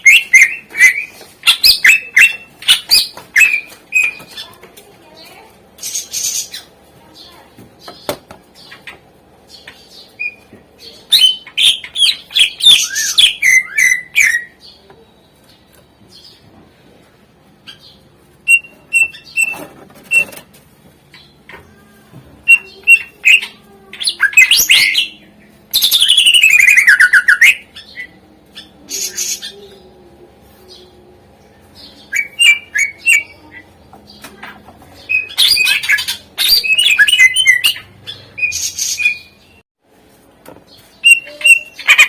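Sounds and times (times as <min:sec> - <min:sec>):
bird singing chirps and whistles: 0:11.1 - 0:14.6, 0:18.5 - 0:20.3, 0:22.4 - 0:28.1, 0:32.0 - 0:33.4, 0:35.1 - 0:39.6, 0:41.0 - 0:42.0.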